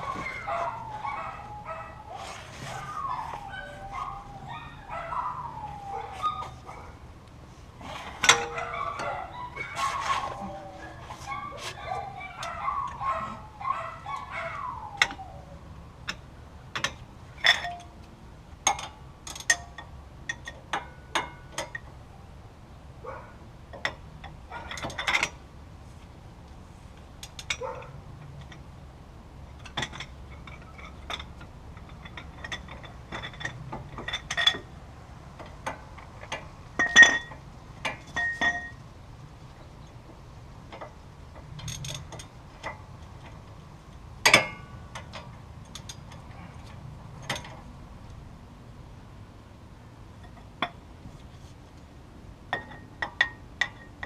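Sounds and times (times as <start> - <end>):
wavering squeak: 0.0 - 6.7, 7.9 - 15.6
hand tools clinking on metal: 8.0 - 15.3, 16.8 - 18.0, 18.6 - 21.9, 23.7 - 25.4, 29.5 - 34.8, 35.4 - 38.8, 40.7 - 43.4, 44.0 - 47.7.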